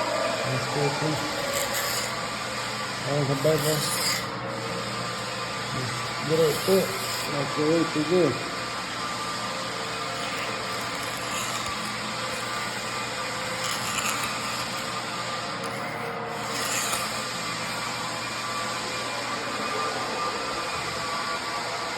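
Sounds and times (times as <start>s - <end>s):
hand tool scraping wood: 0.5s - 4.4s, 5.1s - 7.7s, 9.8s - 15.0s, 15.6s - 18.0s.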